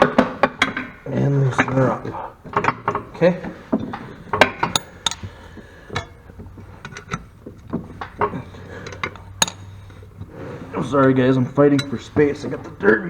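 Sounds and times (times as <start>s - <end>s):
socket wrench clicking: 4.7s - 5.4s.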